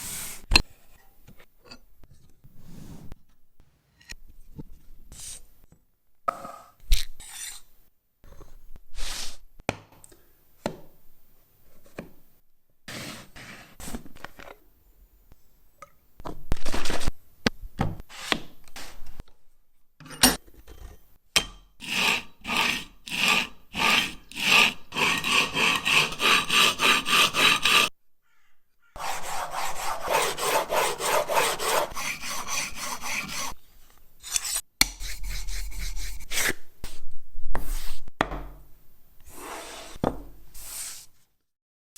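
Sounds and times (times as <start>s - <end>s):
plane iron rubbing on sharpening stone: 21.8s - 27.9s, 29.0s - 33.6s, 34.2s - 36.5s.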